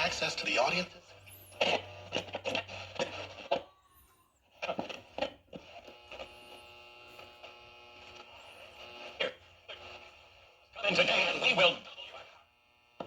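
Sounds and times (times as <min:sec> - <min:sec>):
radio static crackling: 0:00.0 - 0:03.6, 0:04.6 - 0:13.0
steady buzzing tone: 0:05.2 - 0:13.0.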